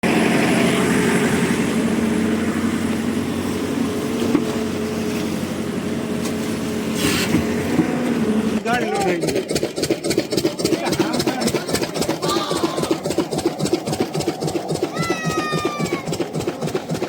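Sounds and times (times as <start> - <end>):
heavy machinery engine running: 0.0 - 17.0.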